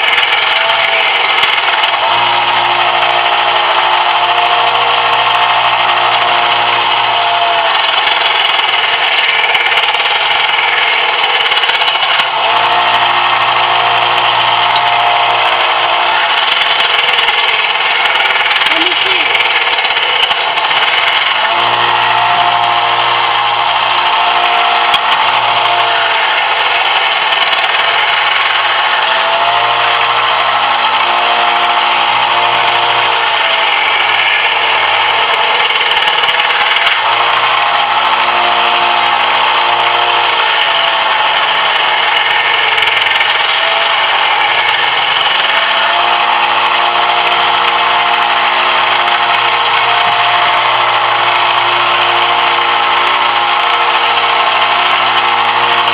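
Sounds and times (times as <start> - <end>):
power tool motor running: 0.0 - 55.9.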